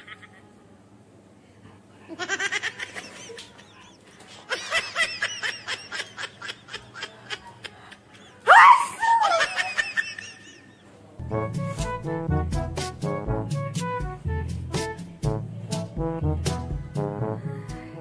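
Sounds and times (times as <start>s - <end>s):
high vocal cry: 8.4s - 9.8s.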